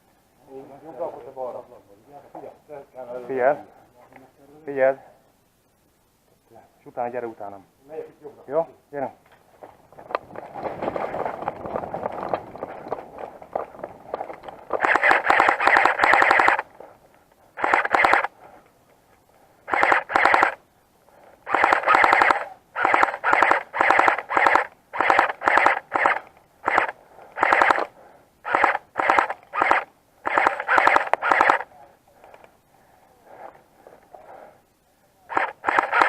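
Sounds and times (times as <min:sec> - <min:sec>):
airsoft gun firing bursts: 0:14.7 - 0:16.7, 0:17.6 - 0:18.3, 0:19.7 - 0:20.6, 0:21.5 - 0:31.7, 0:35.3 - 0:36.0.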